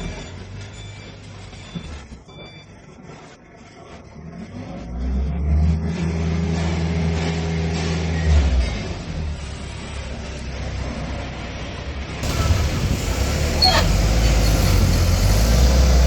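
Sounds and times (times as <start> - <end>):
heavy diesel engine revving: 12.2 - 16.0.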